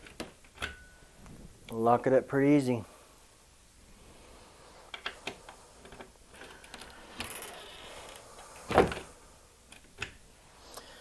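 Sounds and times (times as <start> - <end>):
cabinet door thumping shut: 8.7 - 9.0.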